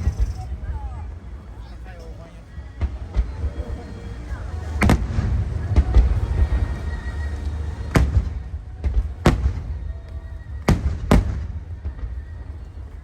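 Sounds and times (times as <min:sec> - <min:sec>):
steady low rumble: 0:02.4 - 0:13.0
fireworks bangs: 0:02.8 - 0:12.9.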